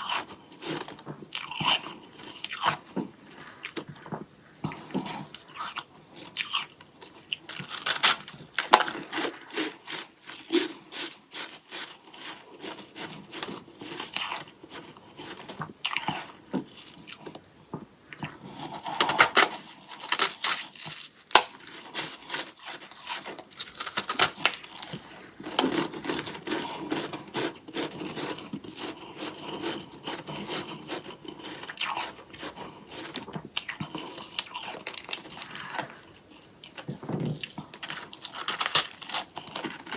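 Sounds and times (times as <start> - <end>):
frost being bitten and chewed: 0.0 - 17.5, 18.1 - 39.9.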